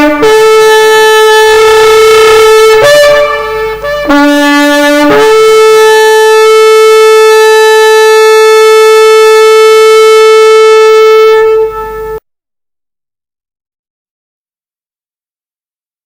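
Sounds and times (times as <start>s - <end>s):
horn long held note: 0.0s - 12.2s.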